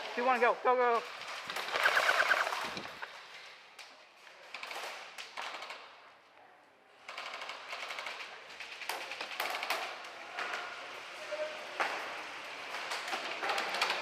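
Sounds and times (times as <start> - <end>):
airsoft guns firing bursts: 1.5 - 3.1.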